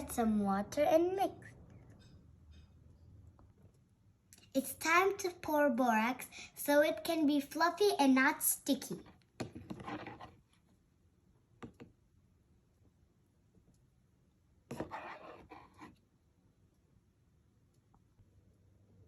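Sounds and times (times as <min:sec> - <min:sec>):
scratchy scraping: 0:09.5 - 0:10.4, 0:14.7 - 0:16.0.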